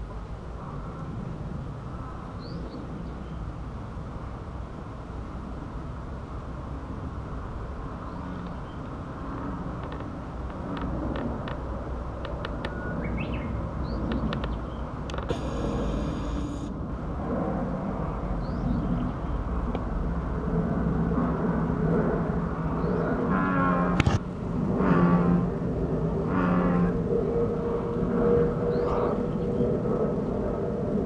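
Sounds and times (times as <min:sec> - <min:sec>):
steady low rumble: 0:13.6 - 0:31.0.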